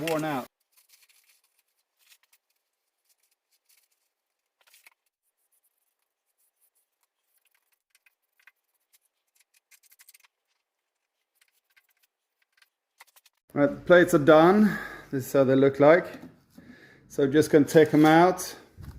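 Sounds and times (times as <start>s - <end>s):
faint small clicks and scrapes: 0.0s - 13.5s.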